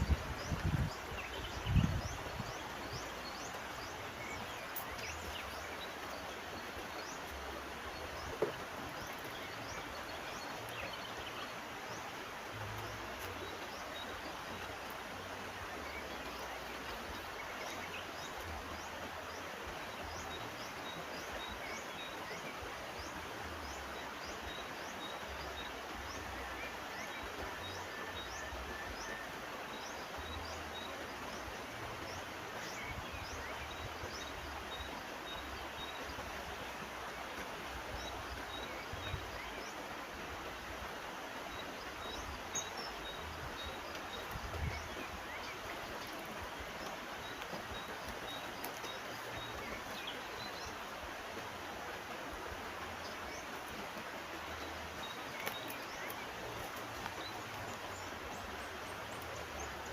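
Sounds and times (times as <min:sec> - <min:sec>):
river flowing: 0:00.0 - 0:59.9.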